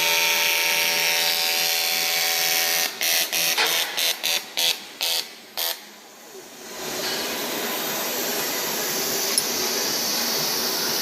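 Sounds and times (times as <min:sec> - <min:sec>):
welding arc buzzing in bursts: 0:00.0 - 0:11.0
steady hiss: 0:04.8 - 0:11.0.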